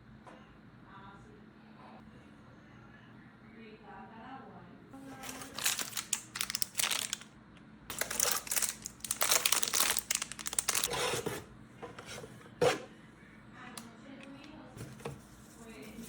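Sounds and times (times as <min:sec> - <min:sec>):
plastic packaging crinkling and tearing: 0:05.0 - 0:07.3, 0:07.9 - 0:11.4.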